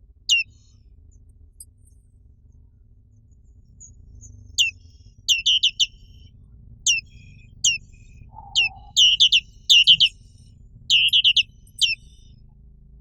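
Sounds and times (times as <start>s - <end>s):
bird calling high sliding notes: 5.3s - 5.9s, 7.7s - 10.2s, 10.9s - 12.1s.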